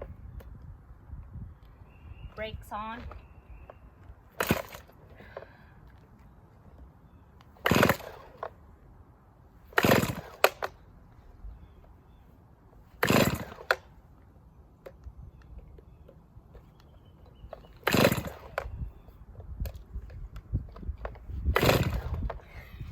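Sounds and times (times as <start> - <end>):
chainsaw starter cord pulls: 4.3 - 5.6, 7.6 - 8.6, 9.7 - 10.7, 13.0 - 13.9, 16.6 - 22.6.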